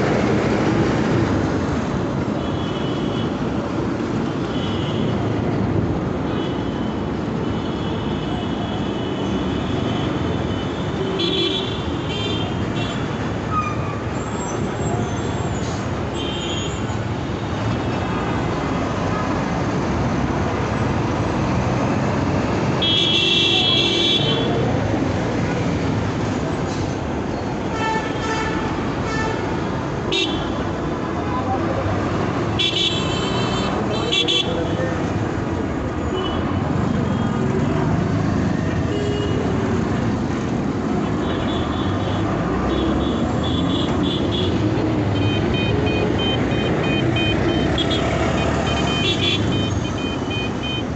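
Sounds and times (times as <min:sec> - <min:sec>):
traffic rumble: 0:00.0 - 0:50.9
vehicle horns honking: 0:22.8 - 0:24.6, 0:32.6 - 0:34.6, 0:45.2 - 0:50.9.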